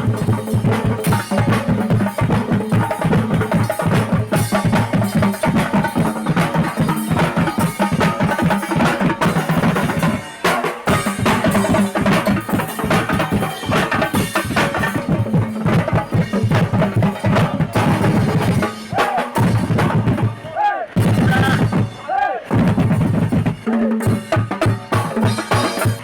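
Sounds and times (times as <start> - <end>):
marching drums: 0.0 - 26.0.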